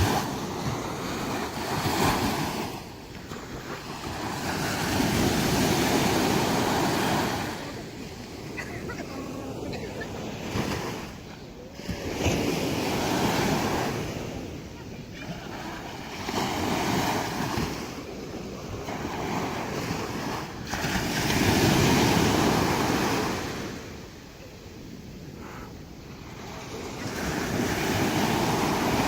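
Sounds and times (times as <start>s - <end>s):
sea waves breaking on beach: 0.0s - 29.0s.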